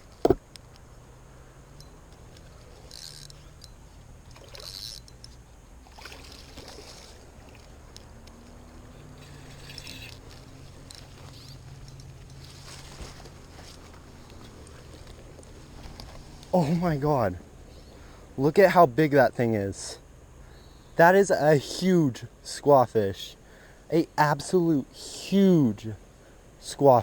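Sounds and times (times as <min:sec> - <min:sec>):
low steady rumble: 0:00.0 - 0:21.6
water splashing and sloshing: 0:02.0 - 0:17.6.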